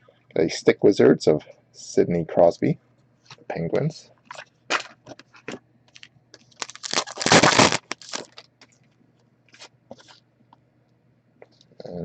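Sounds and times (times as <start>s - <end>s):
card packaging crinkling: 4.3s - 8.6s
loud crackling burst: 6.7s - 8.1s.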